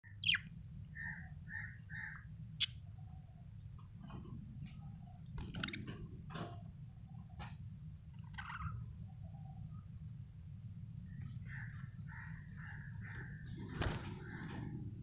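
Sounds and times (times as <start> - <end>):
steady low hum: 0.0 - 15.0
budgerigar chirping: 0.1 - 2.8.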